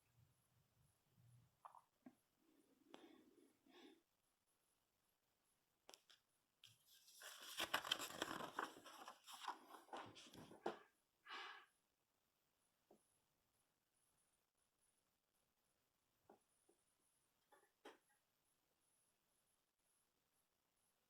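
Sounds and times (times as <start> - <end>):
paper pages rustling: 6.6 - 10.6.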